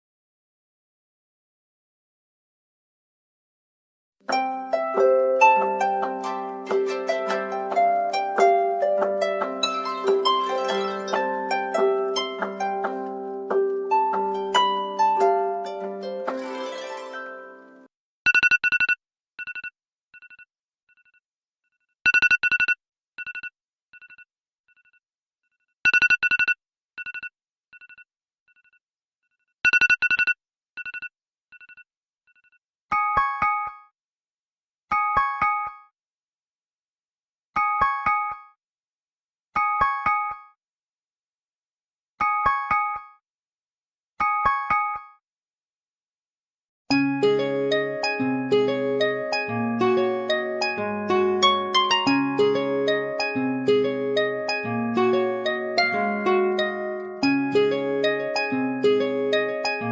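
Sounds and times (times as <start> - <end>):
plucked harp-like alarm melody: 4.3 - 17.8, 46.9 - 59.9.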